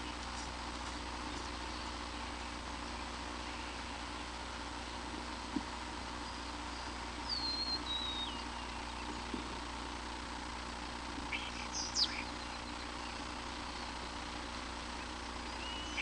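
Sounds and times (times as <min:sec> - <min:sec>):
steady hiss and hum: 0:00.0 - 0:16.0
sharp bird chirps: 0:06.2 - 0:09.1, 0:11.2 - 0:14.3, 0:14.9 - 0:16.0.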